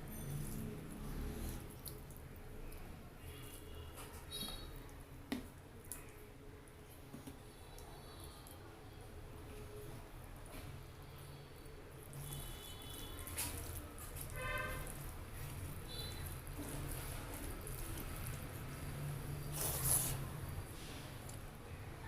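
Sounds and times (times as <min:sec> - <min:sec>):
person chewing food: 0:00.3 - 0:03.6, 0:12.0 - 0:20.5.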